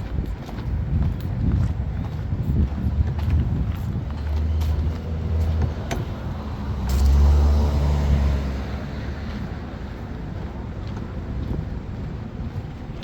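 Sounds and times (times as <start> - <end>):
vehicle engine passing: 2.8 - 10.1.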